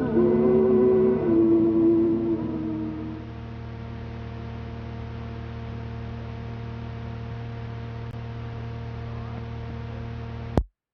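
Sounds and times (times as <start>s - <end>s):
low electrical hum: 0.0s - 10.6s
tape hiss: 0.0s - 10.6s.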